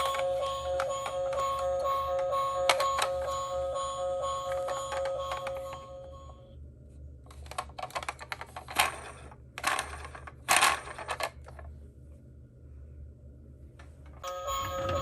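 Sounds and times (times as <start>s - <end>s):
toy cars clattering: 7.3s - 11.7s.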